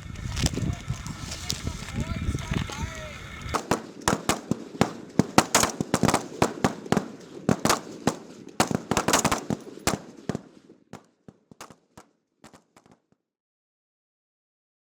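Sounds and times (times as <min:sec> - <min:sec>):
rifle shots: 0:03.6 - 0:11.0.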